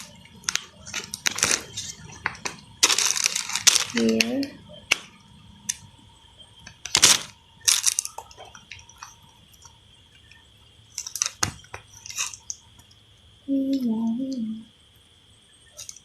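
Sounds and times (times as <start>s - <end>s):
clicks and plastic crinkling: 0.0s - 5.9s, 6.6s - 13.0s.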